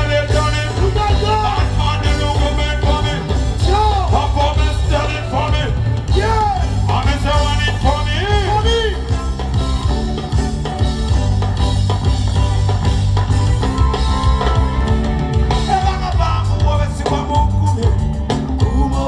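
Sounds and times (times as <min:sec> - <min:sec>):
heavy bass: 0:00.0 - 0:19.0
instrumental live band music: 0:00.0 - 0:19.0
steady drum beat: 0:00.0 - 0:19.0.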